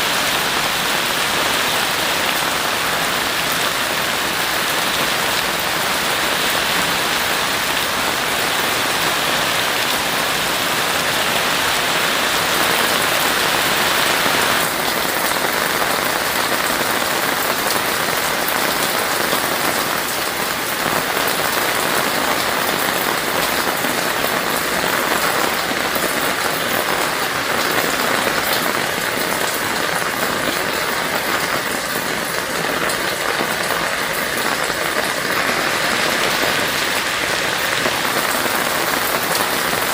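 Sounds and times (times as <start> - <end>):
heavy rain hiss: 0.0 - 39.9.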